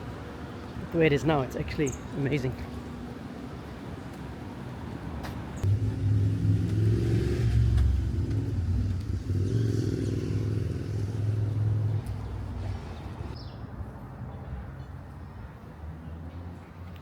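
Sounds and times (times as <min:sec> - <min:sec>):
vehicle engine running: 0:05.6 - 0:13.4.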